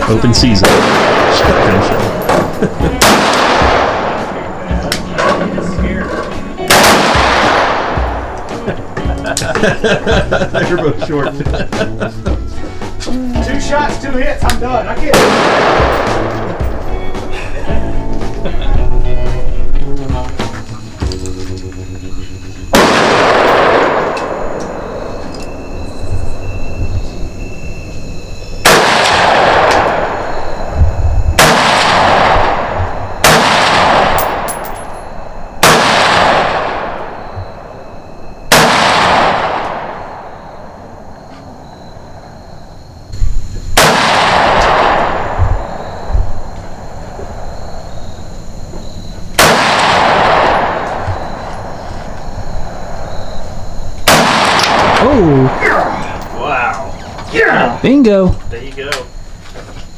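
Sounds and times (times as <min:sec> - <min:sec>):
gunshots with echo: 0:00.0 - 0:09.7, 0:15.0 - 0:17.0, 0:22.7 - 0:25.6, 0:28.6 - 0:30.5, 0:31.4 - 0:37.8, 0:38.5 - 0:41.2, 0:43.7 - 0:48.4, 0:49.3 - 0:57.2.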